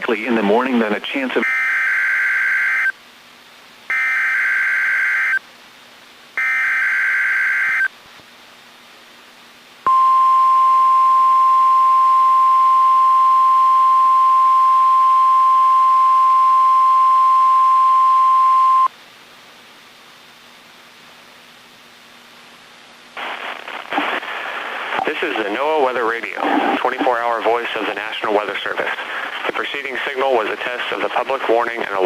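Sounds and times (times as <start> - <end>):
steady pure warning tone: 9.8 - 18.9.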